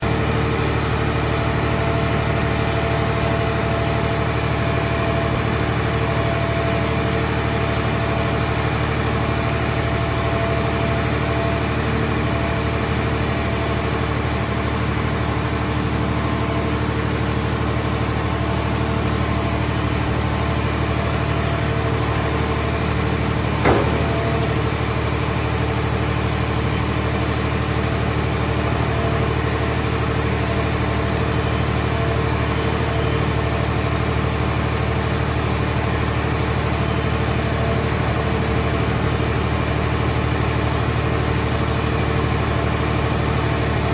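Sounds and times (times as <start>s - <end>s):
power unit droning: 0.0s - 35.1s
sharp knock: 23.6s - 24.6s.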